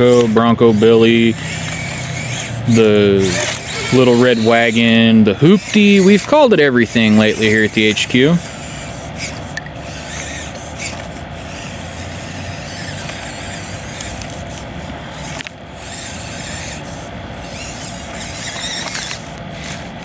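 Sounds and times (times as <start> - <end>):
electric motor and gears whining: 0.0 - 20.0
thin high-pitched whine: 0.0 - 20.0
tires grinding on rock: 0.0 - 20.0.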